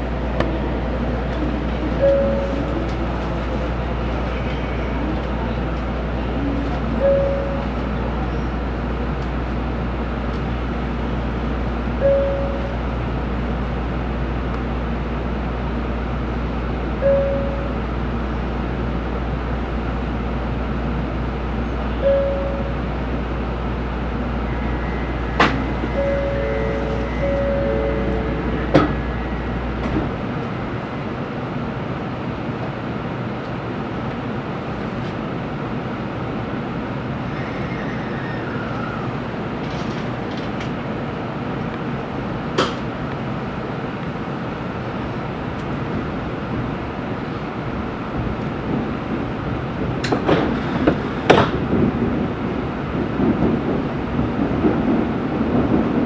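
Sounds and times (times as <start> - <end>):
train pulling away: 0.0 - 31.6
train cabin noise: 0.0 - 56.0
short electronic tones: 25.9 - 28.6.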